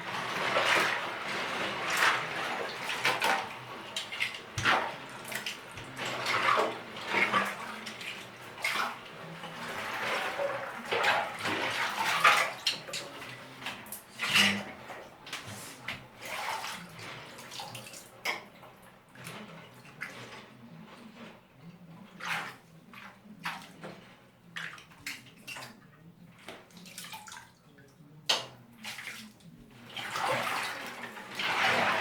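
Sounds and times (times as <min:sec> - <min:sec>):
water sloshing and splashing: 0:00.0 - 0:32.0.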